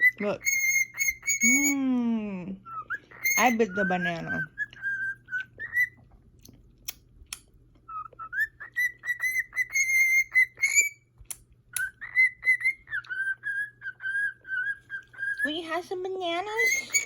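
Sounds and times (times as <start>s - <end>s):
cockatiel whistling: 0.0s - 1.8s, 2.7s - 6.0s, 7.9s - 11.0s, 11.7s - 15.8s, 16.4s - 17.0s.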